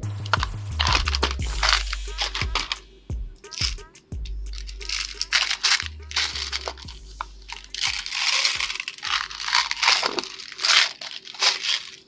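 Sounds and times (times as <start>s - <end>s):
slime squelching by hand: 4.6s - 12.0s.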